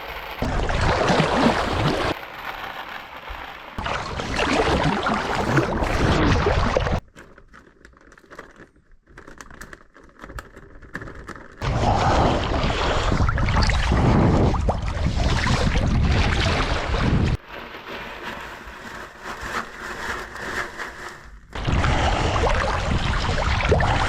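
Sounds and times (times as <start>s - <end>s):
water splashing around swimmer: 3.8s - 7.0s, 11.6s - 17.4s, 21.6s - 24.0s
faint scattered crackles: 5.2s - 11.8s.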